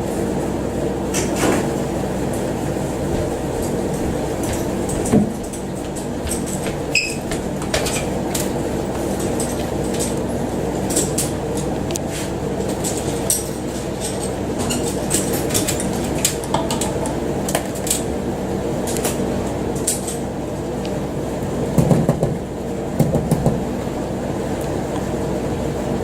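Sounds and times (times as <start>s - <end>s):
steady machine hum: 0.0s - 26.0s
loud knocks: 21.8s - 22.4s.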